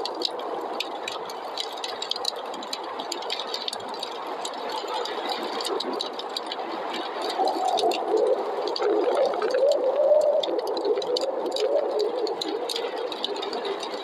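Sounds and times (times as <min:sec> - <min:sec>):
wood fire crackling and popping: 0:00.0 - 0:14.0.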